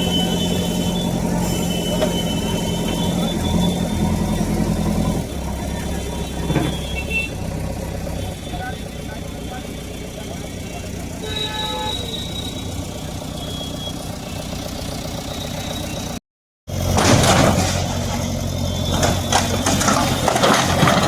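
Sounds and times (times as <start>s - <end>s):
diesel engine running: 0.0s - 21.0s
clattering and knocks: 16.9s - 21.0s.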